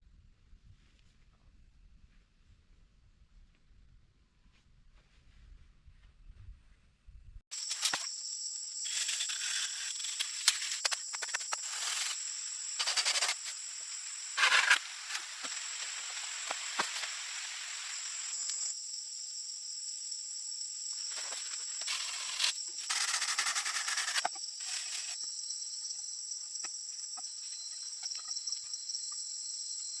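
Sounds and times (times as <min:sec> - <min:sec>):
insects chirring: 0:07.5 - 0:30.0.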